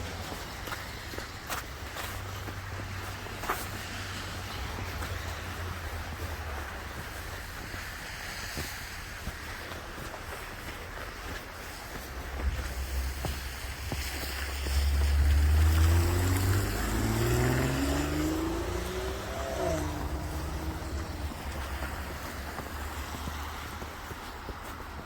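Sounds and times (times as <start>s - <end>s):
large vehicle engine accelerating: 12.6s - 24.1s.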